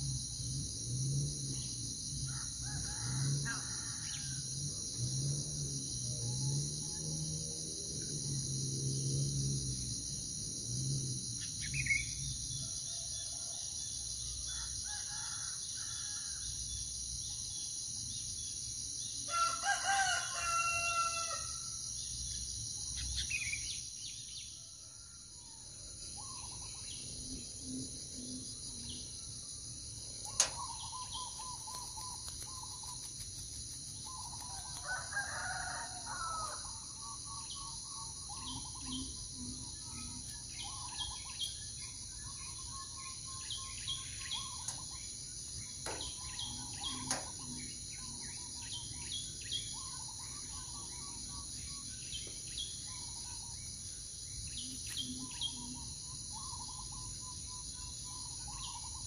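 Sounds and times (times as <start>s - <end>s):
high-pitched insect drone: 0.0s - 24.5s, 25.1s - 59.0s
rooster crowing: 2.3s - 4.6s, 19.3s - 21.7s, 34.4s - 36.9s.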